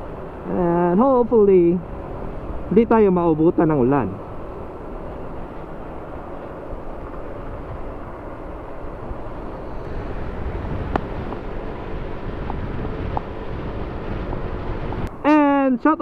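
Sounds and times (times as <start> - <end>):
wind rushing over helmet: 4.8 - 15.2.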